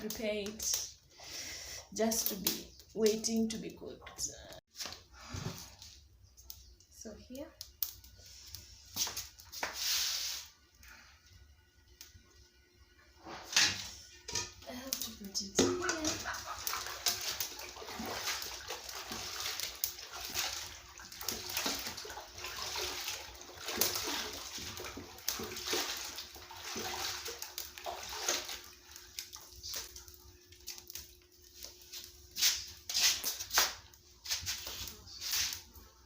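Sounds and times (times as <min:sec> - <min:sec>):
water sloshing in a basin: 0:14.2 - 0:36.0.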